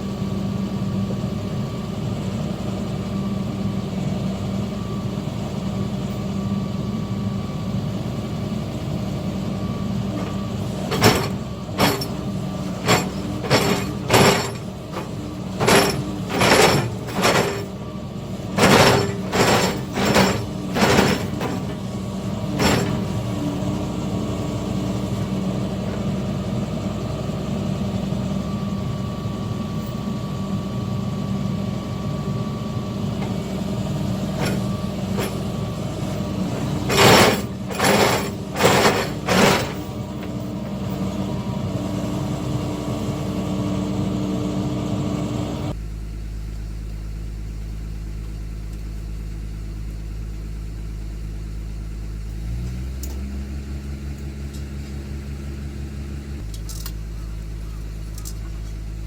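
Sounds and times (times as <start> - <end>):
diesel engine running: 0.0 - 59.0
loud knocks: 18.6 - 21.8.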